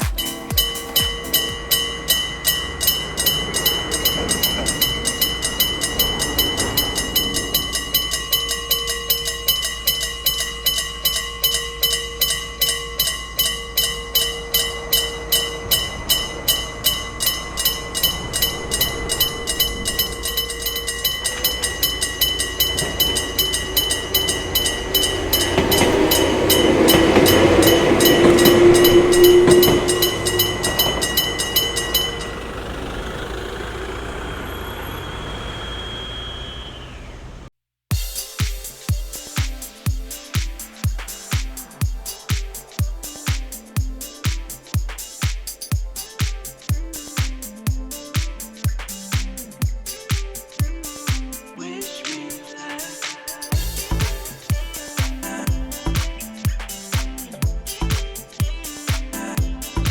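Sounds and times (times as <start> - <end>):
level-crossing bell ringing: 0.0 - 37.4, 53.4 - 57.8
train passing over crossing: 0.0 - 38.1
low hum: 0.5 - 37.5, 53.5 - 56.3.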